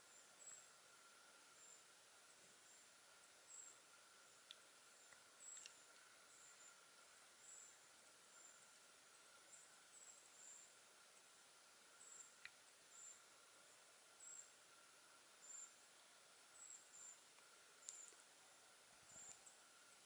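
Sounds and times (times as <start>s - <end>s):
small bird chirping: 0.0s - 0.7s, 2.6s - 8.8s, 9.4s - 10.8s, 11.9s - 14.6s, 15.4s - 15.8s, 16.5s - 18.3s, 19.0s - 19.7s
faint steady tone: 0.0s - 20.0s.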